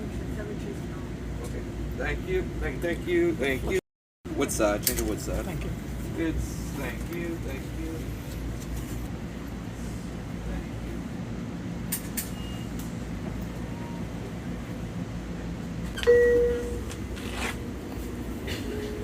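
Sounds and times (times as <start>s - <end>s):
train car rumbling: 0.0s - 19.0s
short electronic tone: 16.0s - 16.8s.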